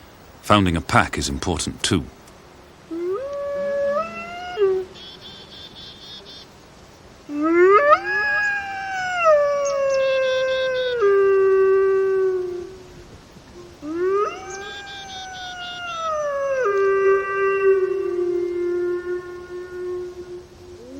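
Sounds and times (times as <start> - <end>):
wolves howling: 2.9 - 5.0, 7.3 - 12.9, 13.6 - 20.9.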